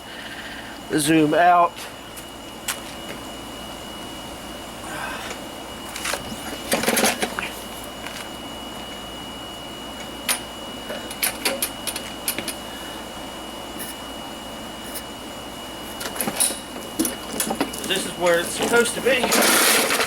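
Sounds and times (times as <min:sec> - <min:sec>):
lawnmower parts clicking and rattling: 0:05.9 - 0:08.2, 0:11.0 - 0:12.6, 0:16.0 - 0:20.0.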